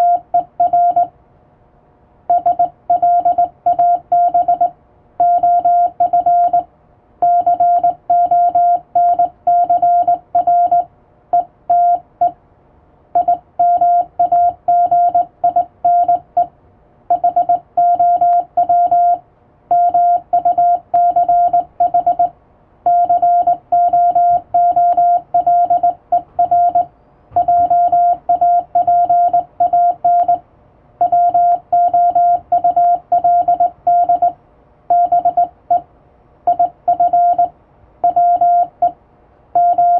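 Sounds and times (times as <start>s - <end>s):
morse code beeping: 0.0s - 1.1s, 2.3s - 12.4s, 13.2s - 16.5s, 17.1s - 22.3s, 22.9s - 30.4s, 31.0s - 35.8s, 36.5s - 39.0s, 39.6s - 39.9s.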